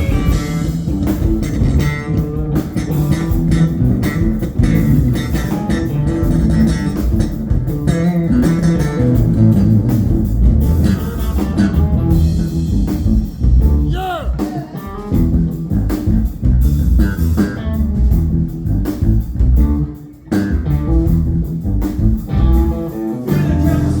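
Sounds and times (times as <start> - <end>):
electric guitar note bending: 0.0 - 12.7
funk-rock band playing: 0.0 - 24.0.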